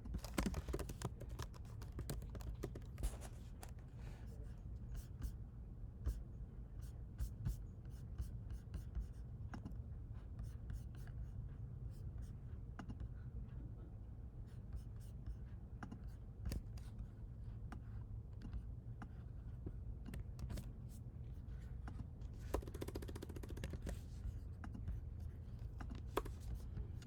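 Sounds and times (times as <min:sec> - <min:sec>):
keyboard and mouse clicks: 0:00.0 - 0:03.2, 0:22.4 - 0:24.0, 0:25.8 - 0:26.6
steady low hum: 0:00.0 - 0:27.0.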